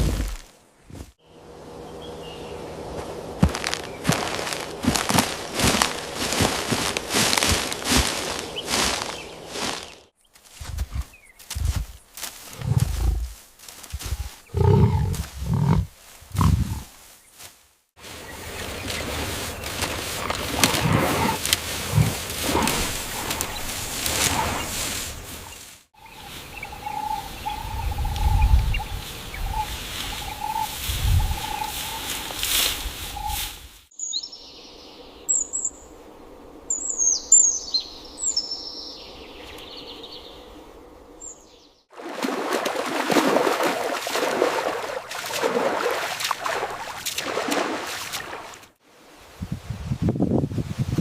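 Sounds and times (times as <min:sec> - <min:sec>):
loud rustling: 0:03.0 - 0:16.9.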